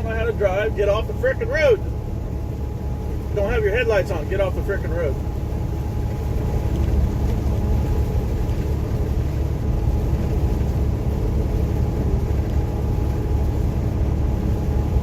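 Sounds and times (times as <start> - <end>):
heavy rain: 0.0 - 15.0
truck engine drone: 0.0 - 15.0
tyre noise on wet road: 3.2 - 15.0.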